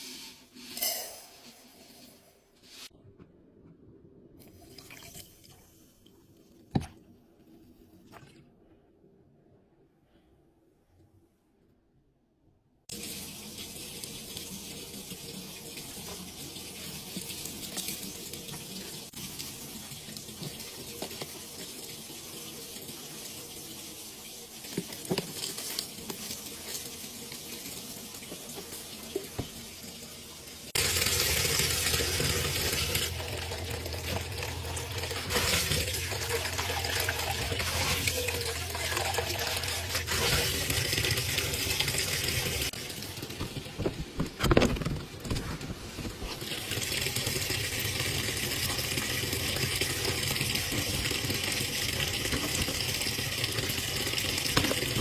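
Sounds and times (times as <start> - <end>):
water splashing in washing machine: 12.9 - 45.0, 45.9 - 55.0.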